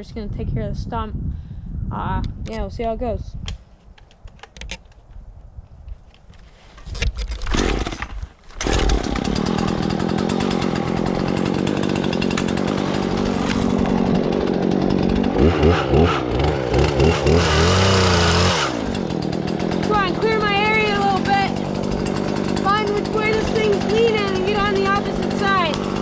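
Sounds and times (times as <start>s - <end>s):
chainsaw starting and revving: 7.4s - 26.0s.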